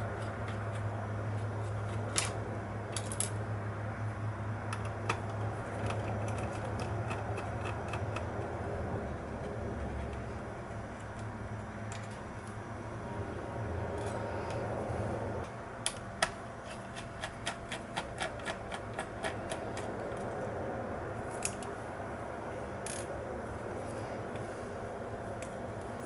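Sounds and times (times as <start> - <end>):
low hum: 0.0 - 16.7.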